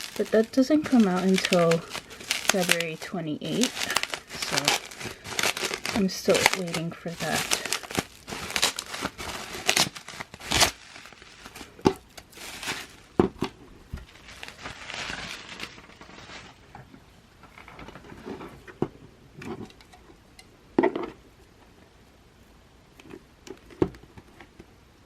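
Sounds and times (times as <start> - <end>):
plastic wrap crinkling: 0.0 - 18.4.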